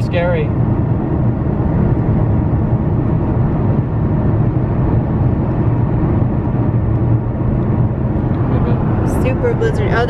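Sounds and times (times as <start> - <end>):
car interior road rumble: 0.0 - 10.0.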